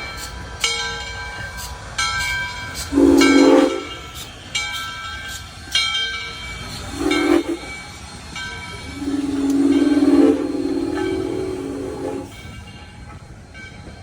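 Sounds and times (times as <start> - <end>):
steam whistle blowing a chord: 2.9 - 4.2, 6.9 - 7.8, 8.9 - 12.5
high ringing strikes: 2.9 - 4.3, 8.7 - 12.5.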